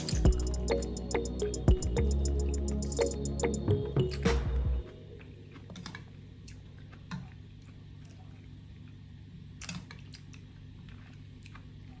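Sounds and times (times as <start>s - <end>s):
low hum: 0.0s - 6.5s.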